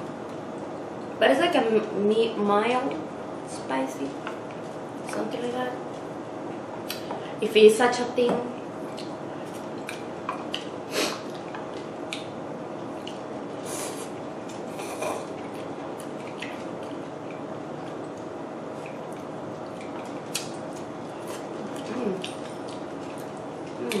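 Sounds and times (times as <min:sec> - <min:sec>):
faint steady hum: 0:00.0 - 0:24.0
wet chewing sounds: 0:08.8 - 0:24.0.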